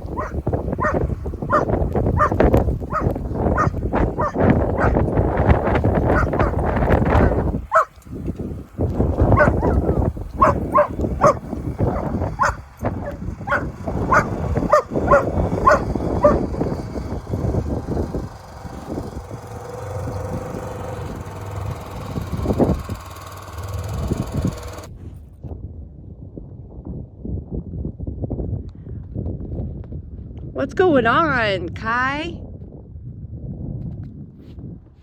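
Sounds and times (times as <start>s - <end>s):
dog barking: 0.0s - 5.2s, 5.8s - 8.0s, 9.2s - 16.8s
wind rumble on microphone: 0.0s - 35.0s.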